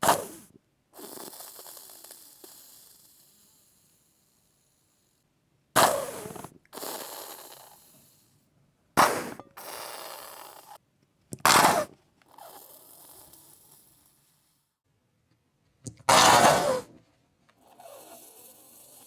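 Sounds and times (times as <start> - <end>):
sauce bottle squirting: 5.8 - 8.0.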